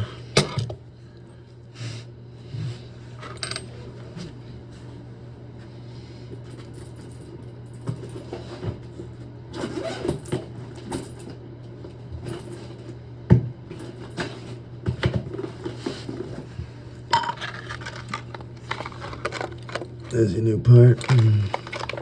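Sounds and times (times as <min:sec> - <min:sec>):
steady low hum: 0:10.7 - 0:22.0
metal parts clinking: 0:17.1 - 0:20.2, 0:20.9 - 0:22.0.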